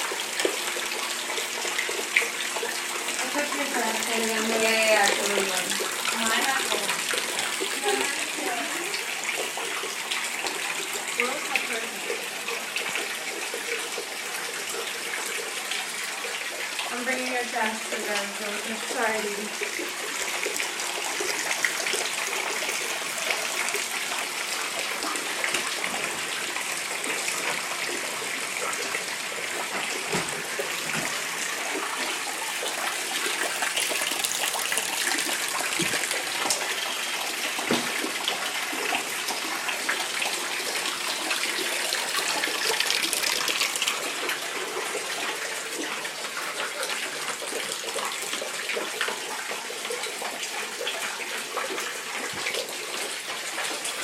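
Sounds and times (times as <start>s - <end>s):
flood water rushing: 20.7s - 46.4s.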